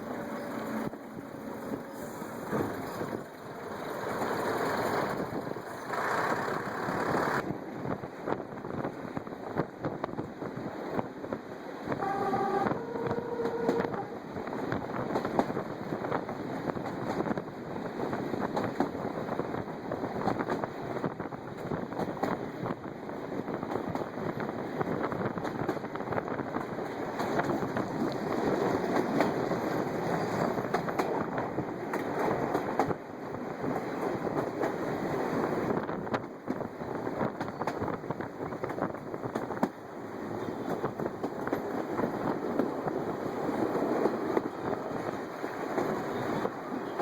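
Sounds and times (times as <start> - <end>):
train wheels rumbling on rails: 0.0 - 47.0
locomotive two-note horn: 12.0 - 14.2.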